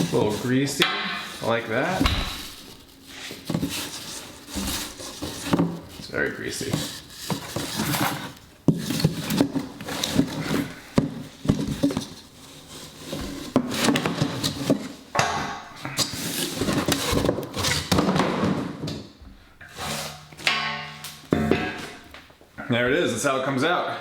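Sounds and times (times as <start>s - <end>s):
packaging rubbing and rustling: 0.0s - 0.6s, 1.2s - 15.1s, 15.9s - 18.1s
heavy vise knocks and clunks: 1.9s - 2.6s, 20.4s - 22.3s.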